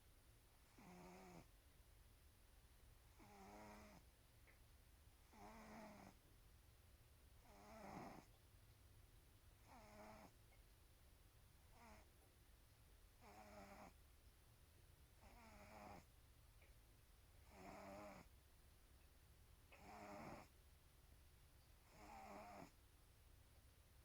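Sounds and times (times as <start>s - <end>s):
cat snoring: 0.6s - 1.5s, 3.1s - 4.1s, 5.2s - 6.2s, 7.4s - 8.4s, 9.6s - 10.4s, 11.7s - 12.1s, 13.2s - 14.0s, 15.2s - 16.1s, 17.4s - 18.3s, 19.7s - 20.5s, 21.8s - 22.8s.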